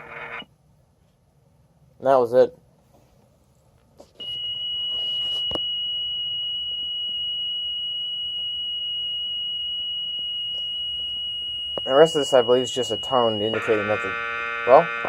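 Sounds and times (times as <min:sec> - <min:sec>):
high-pitched cassette data tone: 0:00.0 - 0:00.5, 0:11.4 - 0:15.0.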